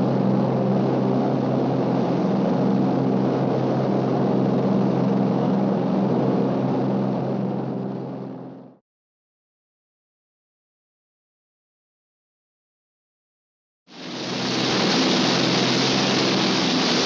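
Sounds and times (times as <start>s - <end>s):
propeller engines droning: 0.0s - 8.8s, 13.9s - 17.0s
rushing air noise: 13.9s - 17.0s.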